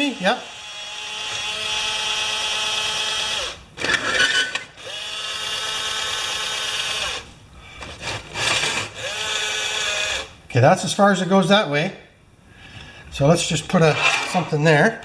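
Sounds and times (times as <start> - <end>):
small electric motor whining: 0.0 - 7.3, 8.3 - 10.3.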